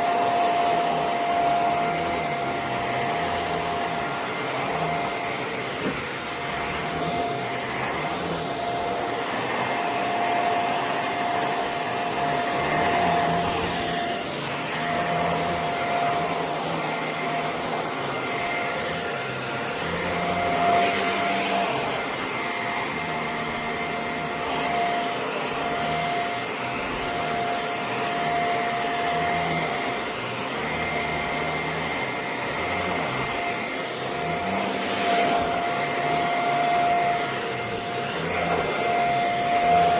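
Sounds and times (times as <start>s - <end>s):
handheld vacuum cleaner running: 0.0s - 39.9s.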